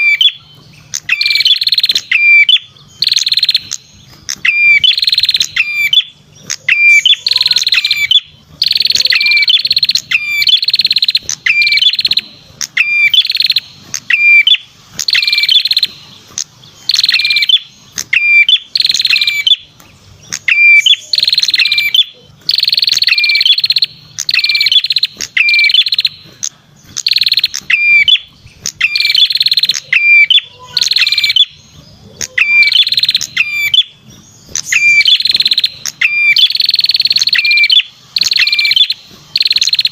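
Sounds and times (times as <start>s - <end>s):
songbird sharp high notes: 0.0s - 39.9s.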